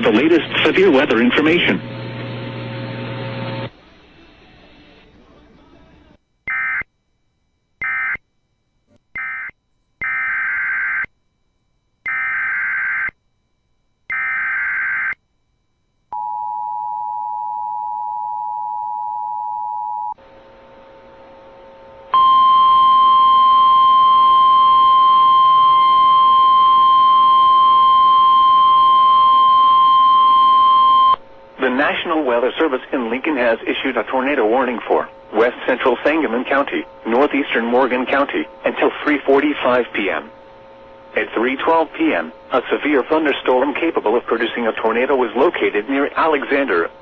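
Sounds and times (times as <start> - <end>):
single-pitch warning alarm tone: 6.5 - 6.8, 7.8 - 8.2, 9.2 - 11.1, 12.0 - 13.1, 14.1 - 15.2, 21.8 - 31.3.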